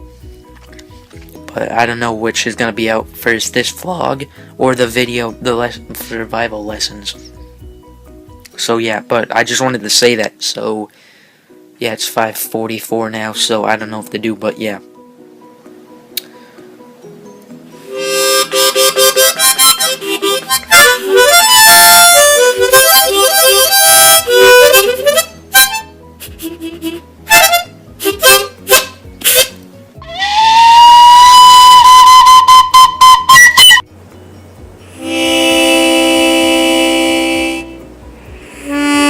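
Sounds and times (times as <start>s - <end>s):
harmonica playing: 17.8s - 33.9s, 34.8s - 39.0s.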